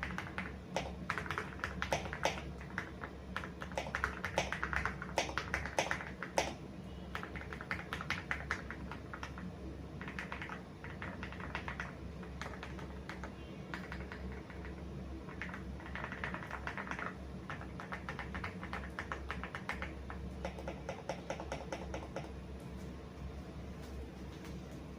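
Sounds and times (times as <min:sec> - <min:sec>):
fast typing on mechanical keyboard: 0:00.0 - 0:22.4.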